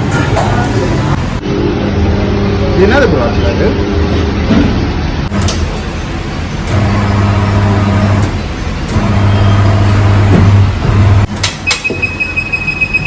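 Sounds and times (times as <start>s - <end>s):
high-pitched tone: 11.7s - 13.0s.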